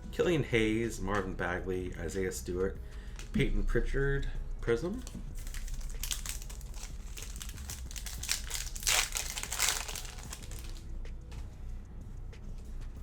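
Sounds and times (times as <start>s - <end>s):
plastic wrapper crinkling and tearing: 5.0s - 10.8s.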